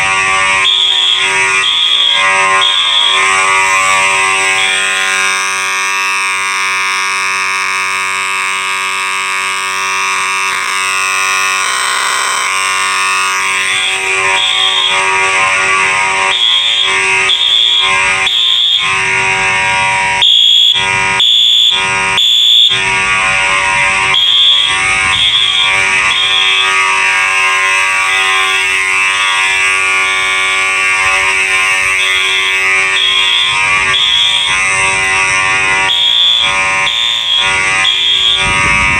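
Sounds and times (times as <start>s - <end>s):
harsh alarm horn buzz: 0.0s - 38.9s
high-pitched horn pulses: 0.0s - 38.9s.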